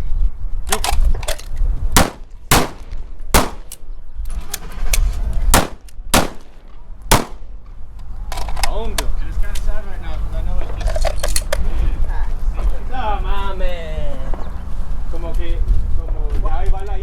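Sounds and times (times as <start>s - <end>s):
fainter gunshots: 2.0s - 3.7s, 5.6s - 7.5s
loud gunshots: 2.0s - 3.7s, 5.5s - 7.5s.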